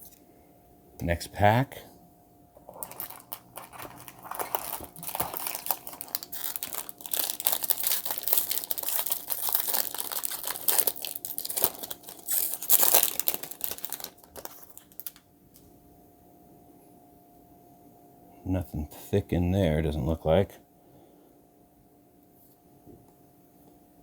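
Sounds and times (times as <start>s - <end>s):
wrapper tearing and crinkling: 2.7s - 15.2s.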